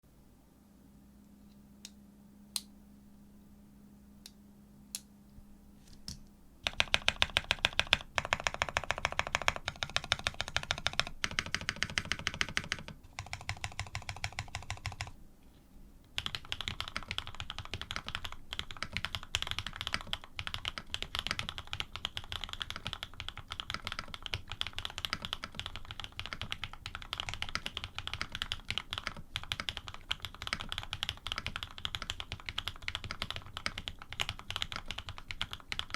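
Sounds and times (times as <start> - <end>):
typing on mechanical keyboard: 6.6 - 15.2, 16.2 - 35.9.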